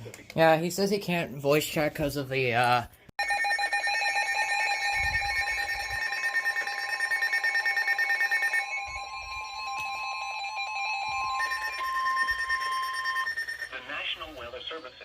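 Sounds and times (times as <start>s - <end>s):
rapidly pulsing electronic beeps: 3.2s - 14.0s
steady alarm tone: 3.2s - 14.0s.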